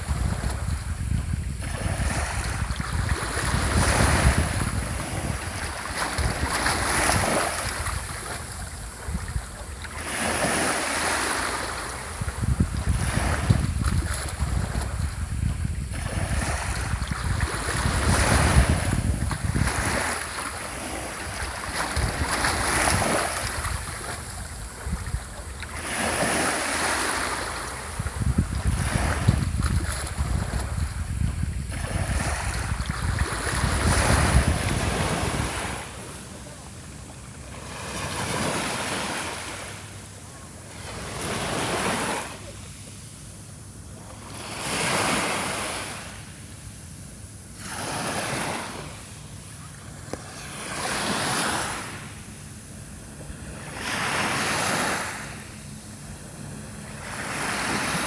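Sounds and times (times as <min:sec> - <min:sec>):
wind rumble on microphone: 0:00.0 - 0:10.7, 0:11.8 - 0:36.6
small waves breaking on shore: 0:00.0 - 0:58.0.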